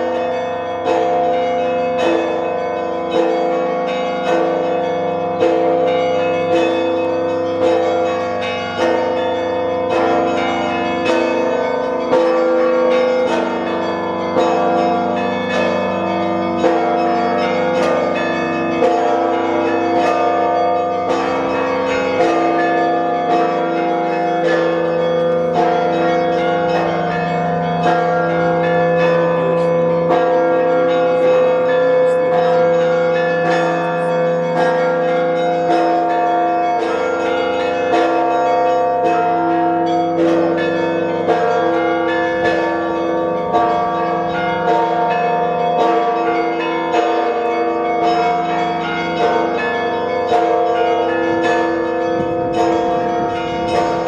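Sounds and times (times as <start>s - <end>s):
church bells pealing: 0.0s - 54.0s.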